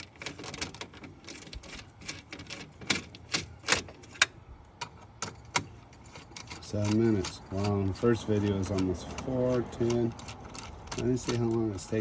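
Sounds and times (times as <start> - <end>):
ratchet wrench clicking: 6.1 - 12.0.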